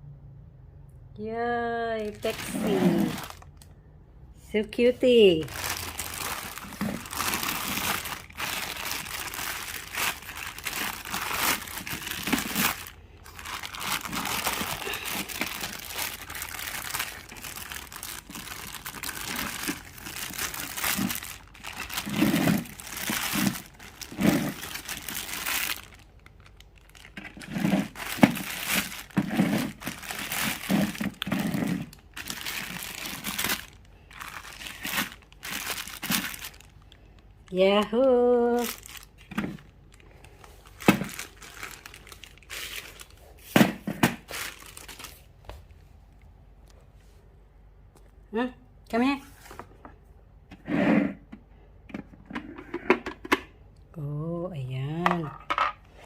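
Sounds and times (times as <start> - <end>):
plastic packaging crinkling: 2.0 - 3.6, 5.0 - 45.7.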